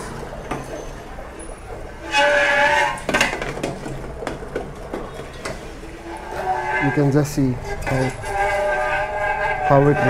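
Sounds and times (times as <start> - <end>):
dry ice screeching on metal: 2.0 - 3.3, 5.9 - 10.0.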